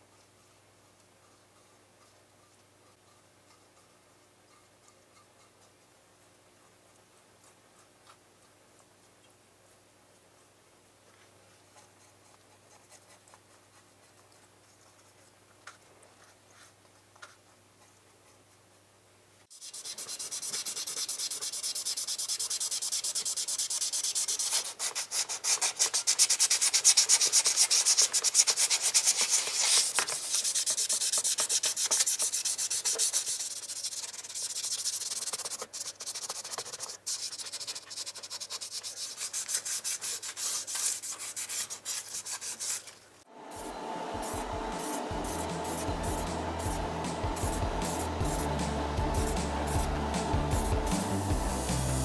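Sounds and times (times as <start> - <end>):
sanding scratches on metal: 19.5 - 42.9, 44.3 - 49.9.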